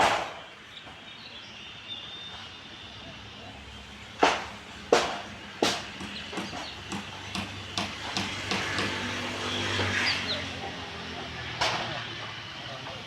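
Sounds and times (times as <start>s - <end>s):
hammer striking formwork: 0.0s - 0.4s, 4.2s - 9.1s.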